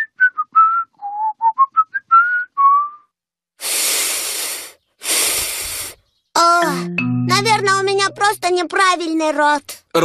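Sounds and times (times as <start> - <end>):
breathy blows of air: 3.6 - 6.1.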